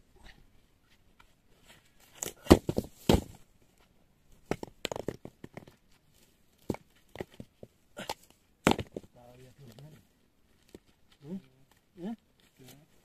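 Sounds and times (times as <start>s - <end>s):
stones knocking together: 2.2s - 3.4s, 4.4s - 5.8s, 6.6s - 9.2s.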